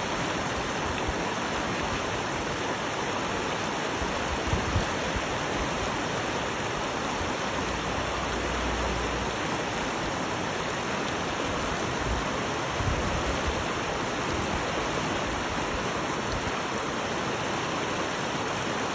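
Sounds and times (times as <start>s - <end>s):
flowing water: 0.0s - 18.9s.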